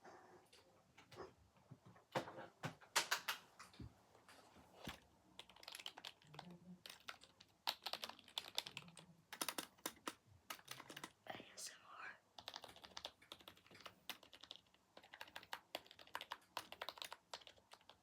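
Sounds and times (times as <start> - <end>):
keyboard typing: 4.9 - 11.2, 12.3 - 18.0.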